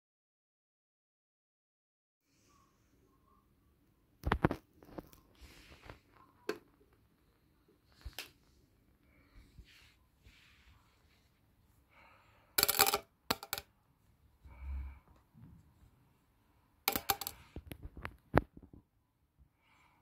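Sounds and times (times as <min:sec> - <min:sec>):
small hard objects clattering: 0:16.9 - 0:18.1.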